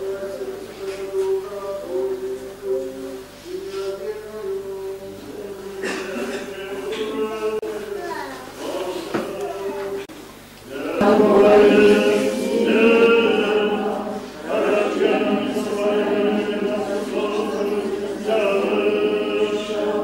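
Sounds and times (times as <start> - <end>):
group of voices chanting: 10.7 - 20.0.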